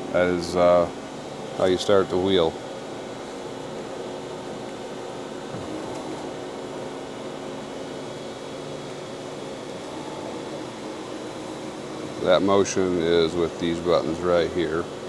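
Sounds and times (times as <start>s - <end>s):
grinding machine humming: 0.0s - 15.0s.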